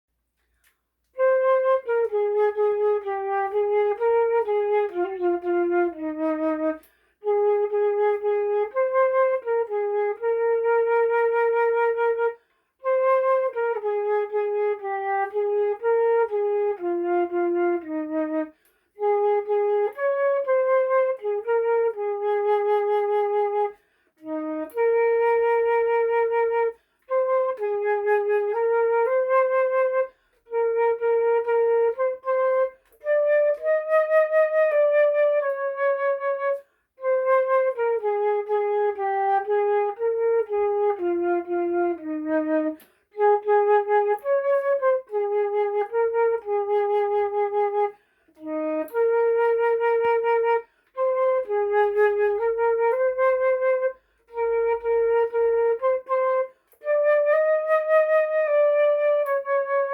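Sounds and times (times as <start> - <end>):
solo flute melody: 0.2 - 59.9.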